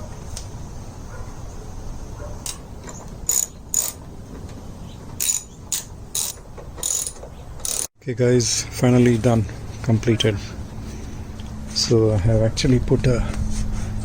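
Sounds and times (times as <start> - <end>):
hand tools clicking and scraping: 2.4 - 7.9.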